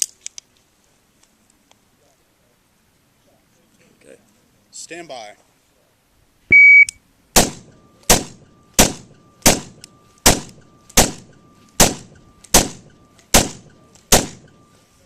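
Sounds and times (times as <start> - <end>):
rifle shots cracking and ringing: 7.4 - 14.7.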